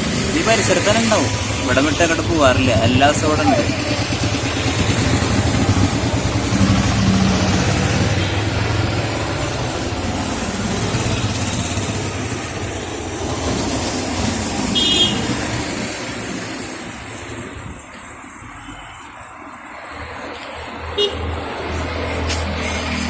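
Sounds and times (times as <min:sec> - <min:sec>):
vehicle engine running: 0:00.0 - 0:15.2.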